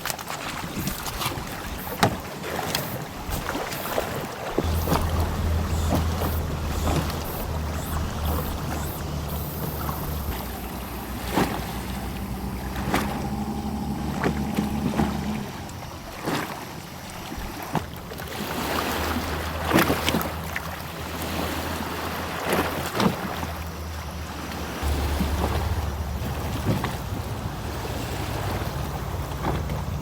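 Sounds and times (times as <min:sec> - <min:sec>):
steady low rumble: 0:04.6 - 0:16.2, 0:24.8 - 0:29.4.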